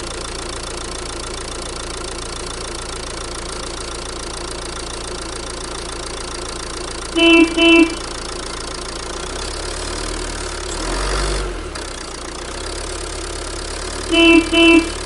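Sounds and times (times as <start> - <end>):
vehicle engine idling: 0.0 - 11.0, 11.6 - 15.0
horn honks: 7.1 - 8.3, 14.1 - 15.0.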